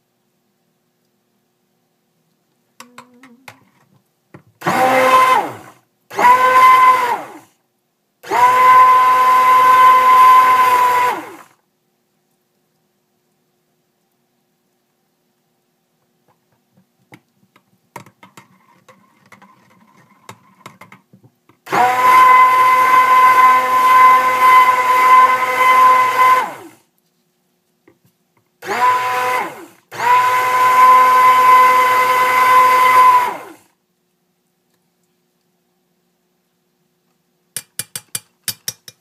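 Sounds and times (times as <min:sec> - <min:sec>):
stick blender running: 0:04.6 - 0:07.4, 0:08.2 - 0:11.5, 0:21.7 - 0:26.8, 0:28.6 - 0:33.6
faint clicks and knocks: 0:15.9 - 0:21.6.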